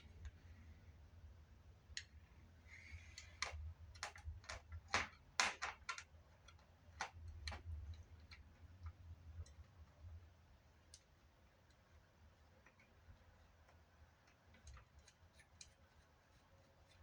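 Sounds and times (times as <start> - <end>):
plastic parts clicking and tapping: 3.2 - 8.4.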